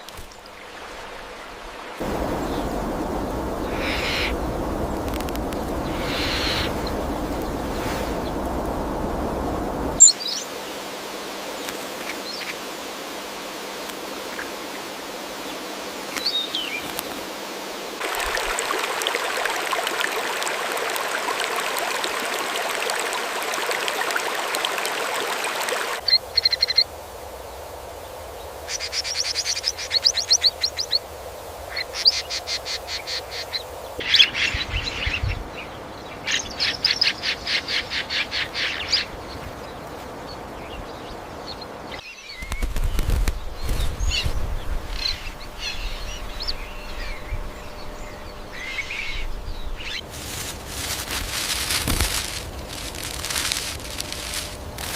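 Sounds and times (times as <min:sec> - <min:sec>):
birds chirping: 0:01.2 - 0:10.5, 0:31.8 - 0:54.9
steady rushing noise: 0:01.9 - 0:10.0, 0:42.6 - 0:54.9.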